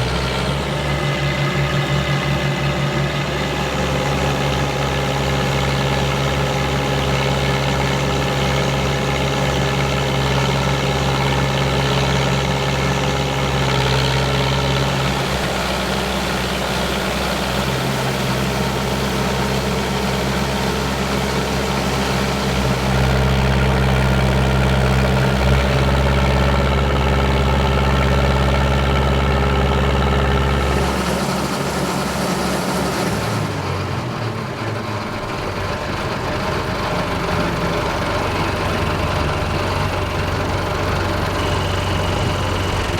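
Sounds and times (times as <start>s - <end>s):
straw blower whirring: 0.0s - 42.9s
tractor diesel engine under load: 0.0s - 42.9s.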